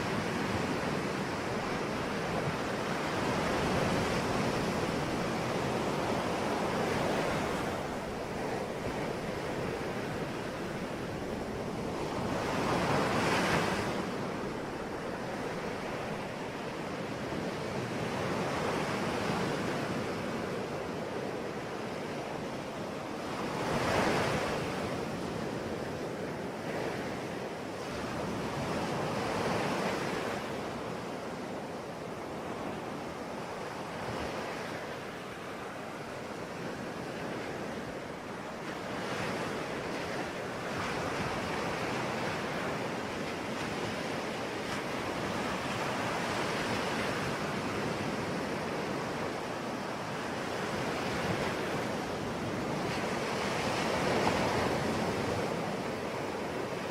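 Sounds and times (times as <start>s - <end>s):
sea waves washing on shore: 0.0s - 56.9s.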